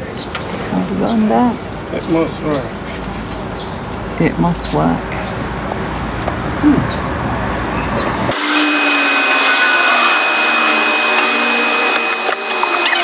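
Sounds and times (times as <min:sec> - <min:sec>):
gas pump hissing with whine: 0:08.3 - 0:13.0.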